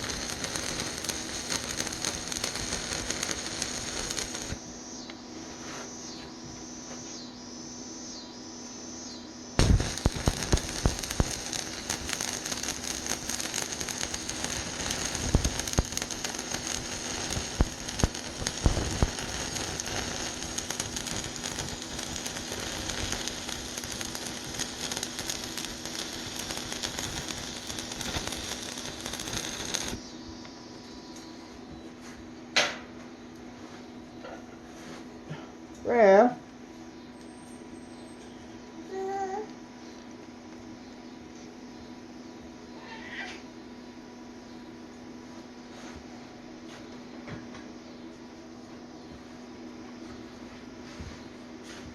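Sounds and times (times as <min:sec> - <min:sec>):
welding arc crackling: 0:00.0 - 0:04.6, 0:09.6 - 0:30.0
steady hum: 0:00.0 - 0:51.9.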